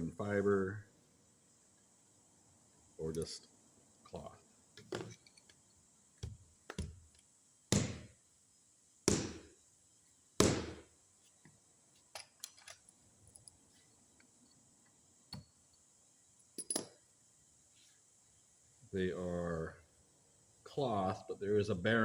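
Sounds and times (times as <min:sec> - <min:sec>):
small parts clicking: 0:12.1 - 0:13.6.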